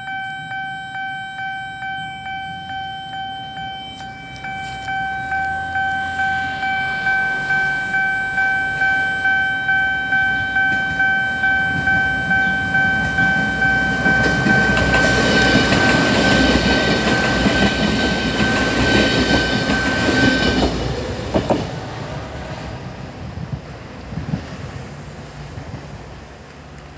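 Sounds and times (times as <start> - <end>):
level crossing pulsing tone: 0.0 - 20.7
diesel railcar passing: 0.0 - 26.9.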